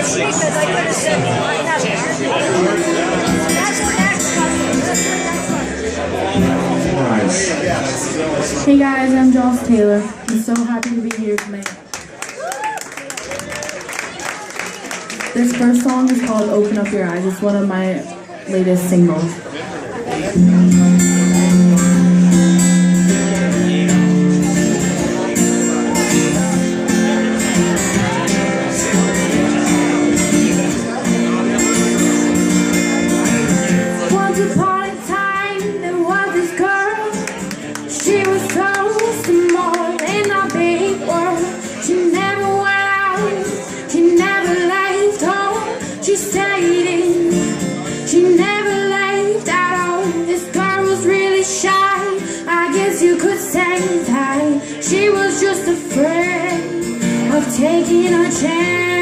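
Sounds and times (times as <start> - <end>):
guitar strumming chords: 0.0 - 11.3, 20.2 - 59.0
woman singing slow pop song: 34.1 - 37.3, 37.9 - 59.0.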